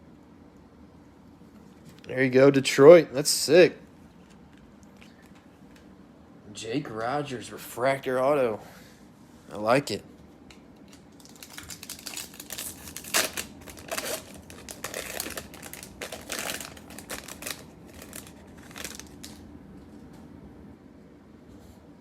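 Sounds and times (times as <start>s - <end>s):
card pack wrapper crinkling: 10.5s - 19.4s.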